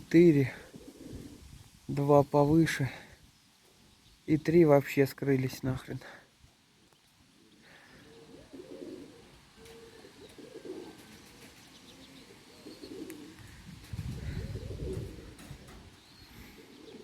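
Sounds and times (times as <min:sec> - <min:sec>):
pigeons cooing: 0:00.0 - 0:01.6, 0:07.2 - 0:17.0.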